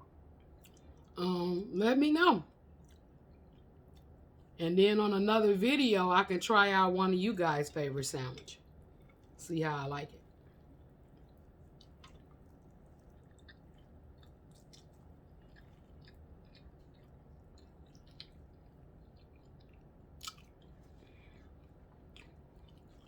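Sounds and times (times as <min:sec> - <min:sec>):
mouth chewing with wet clicks: 0:00.2 - 0:01.2, 0:02.5 - 0:04.6, 0:08.6 - 0:09.4, 0:10.1 - 0:23.0.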